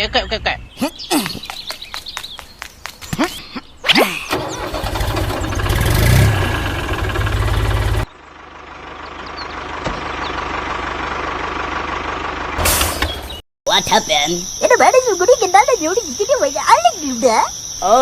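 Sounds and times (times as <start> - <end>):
vehicle engine starting and revving: 4.3 - 13.4
engine running steadily: 4.3 - 16.8.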